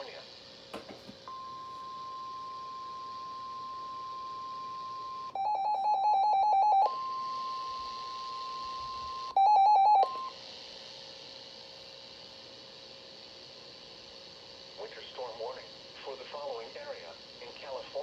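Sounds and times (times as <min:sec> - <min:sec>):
steady warning alarm tone: 0:00.8 - 0:10.3.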